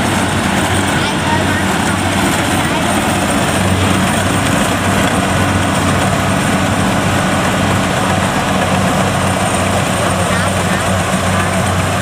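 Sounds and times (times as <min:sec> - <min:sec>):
diesel engine running steadily: 0:00.0 - 0:12.0.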